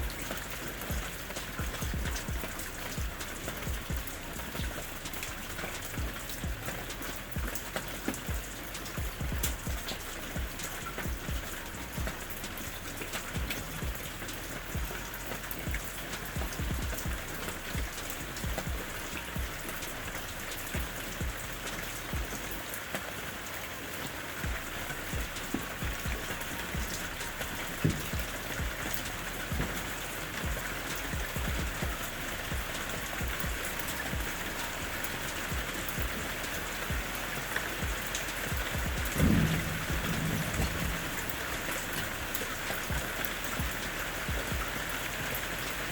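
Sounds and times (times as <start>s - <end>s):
rain pattering on hard surface: 0.0s - 45.9s
low thump: 27.8s - 28.7s, 39.0s - 42.1s.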